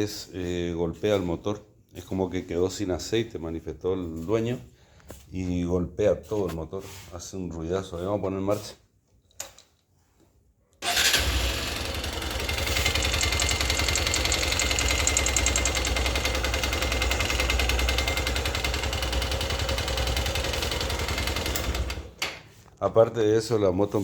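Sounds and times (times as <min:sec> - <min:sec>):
motorcycle engine starting and running: 0:10.8 - 0:22.3
rapid engine knock: 0:12.0 - 0:22.0.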